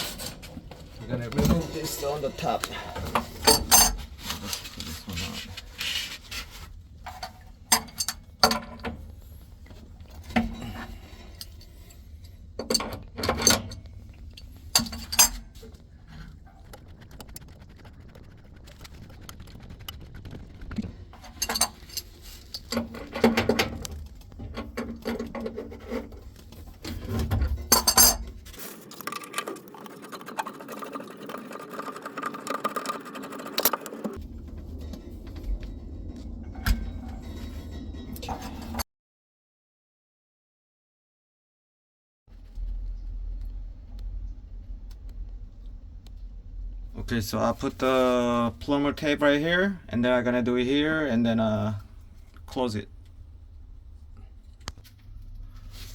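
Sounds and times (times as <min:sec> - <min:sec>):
steady noise: 0:11.0 - 0:24.6.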